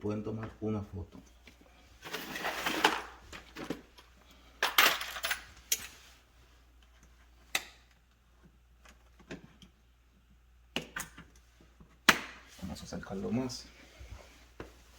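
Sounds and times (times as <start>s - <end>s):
plastic and metal parts clattering: 2.0s - 4.0s.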